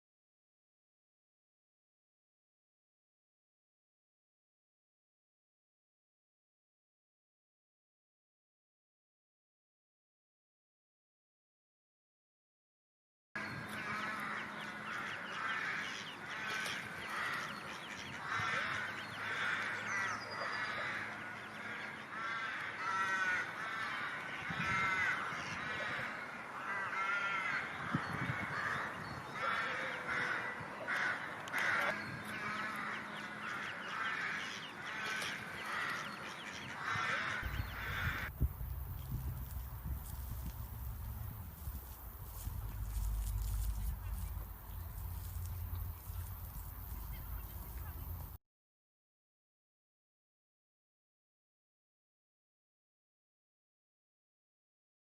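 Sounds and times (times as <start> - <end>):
birds calling: 13.4 - 48.4.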